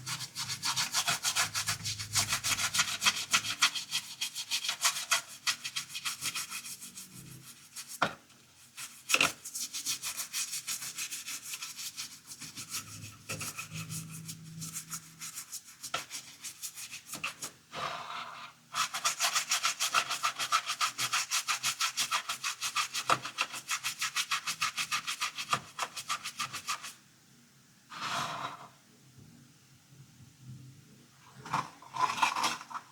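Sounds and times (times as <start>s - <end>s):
scrubbing toy car: 18.8s - 26.8s.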